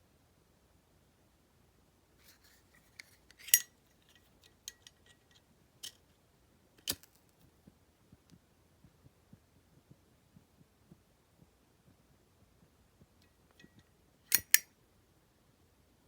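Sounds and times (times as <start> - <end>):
small metallic clicks and scrapes: 2.2 - 6.2, 6.8 - 7.4, 13.2 - 14.7
lighter lid clacking: 3.4 - 3.7, 14.3 - 14.6.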